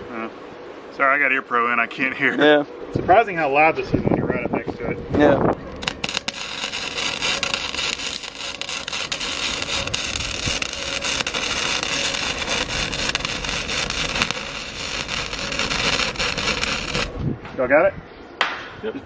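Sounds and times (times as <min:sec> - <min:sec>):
welding crackles and pops: 0:05.5 - 0:17.2
arc welding sizzling hiss: 0:05.8 - 0:17.1.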